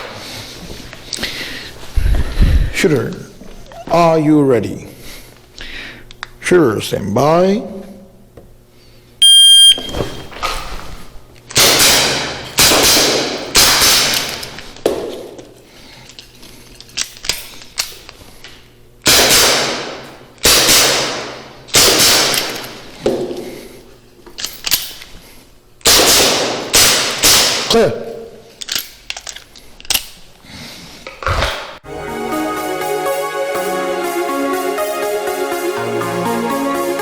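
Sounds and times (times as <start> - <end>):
shot timer beep: 9.2 - 9.9
airsoft revolver shots: 11.6 - 14.4, 19.1 - 22.7, 25.8 - 27.8.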